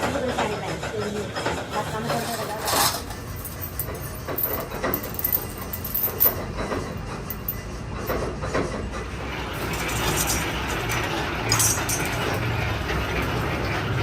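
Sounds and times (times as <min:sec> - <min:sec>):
indistinct voices: 0:00.0 - 0:03.4
workshop machinery humming: 0:00.0 - 0:14.0
metallic clinks and knocks: 0:02.6 - 0:08.2, 0:09.6 - 0:12.6.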